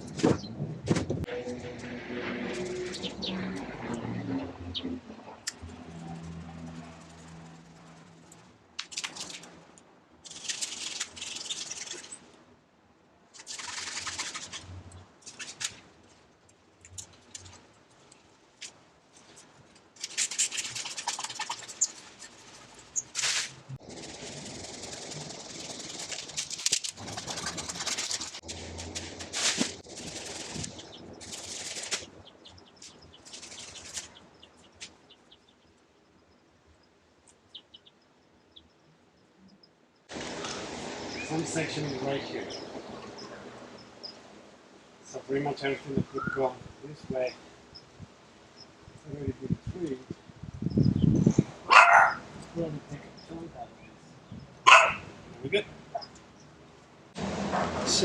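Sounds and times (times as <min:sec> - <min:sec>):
leafy branches rustling and scraping: 0:00.0 - 0:12.5, 0:13.3 - 0:35.2, 0:40.1 - 0:48.4, 0:57.1 - 0:58.0.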